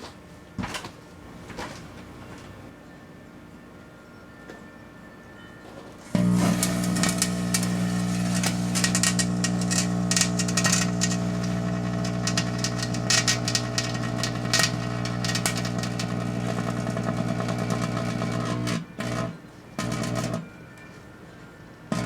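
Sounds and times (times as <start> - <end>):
microwave oven humming: 6.0 - 20.5
fireworks crackling and popping: 6.2 - 18.9.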